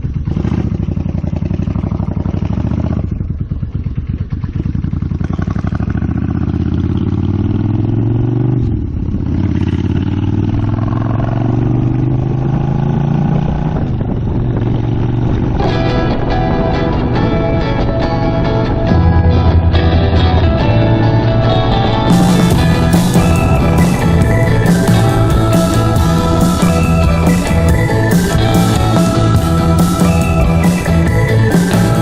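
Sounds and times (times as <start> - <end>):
motorcycle engine shifting gears: 0.0 - 32.0.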